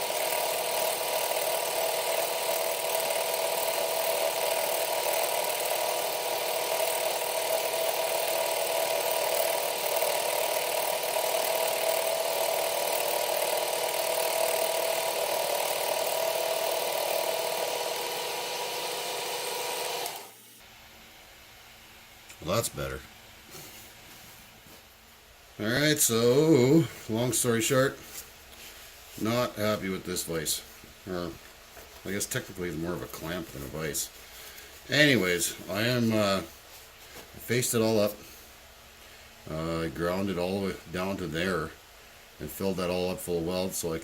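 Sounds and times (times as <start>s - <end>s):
power tool working on metal: 0.0s - 20.5s.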